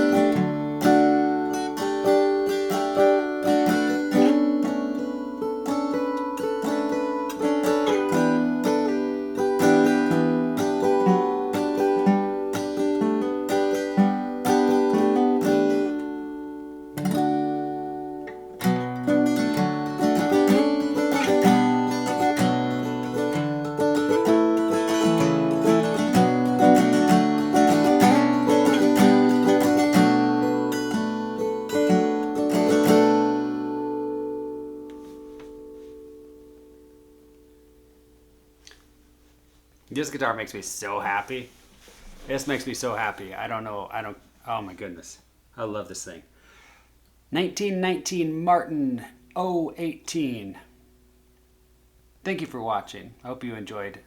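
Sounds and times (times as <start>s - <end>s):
fingerstyle acoustic guitar: 0.0s - 40.2s.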